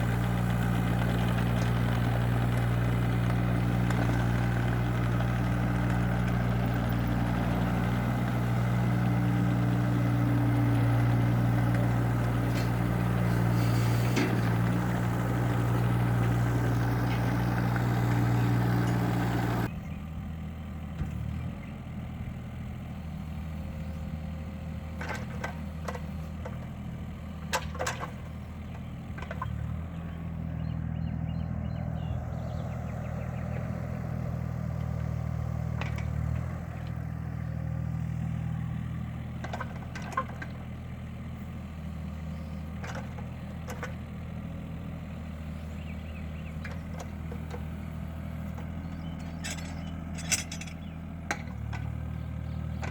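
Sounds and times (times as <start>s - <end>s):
diesel engine humming: 0.0s - 52.9s
sharp metal clanks: 49.1s - 51.4s.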